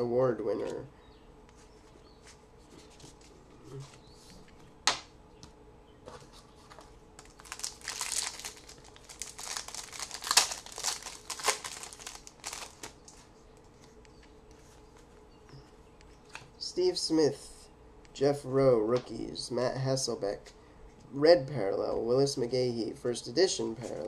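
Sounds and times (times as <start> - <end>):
plastic wrapper crinkling: 7.2 - 13.2.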